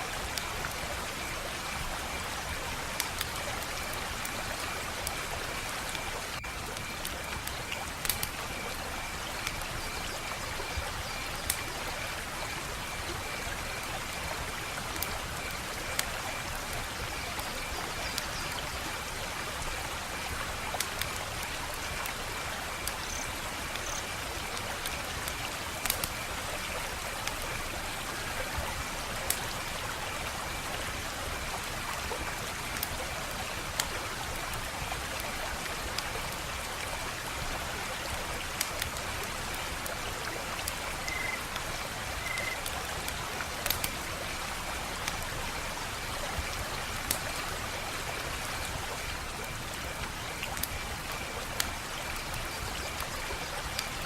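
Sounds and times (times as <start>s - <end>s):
wood fire crackling: 0.1s - 9.8s, 19.0s - 29.6s, 31.0s - 54.0s
night insects trilling: 22.7s - 24.2s, 40.9s - 41.5s, 42.2s - 42.6s.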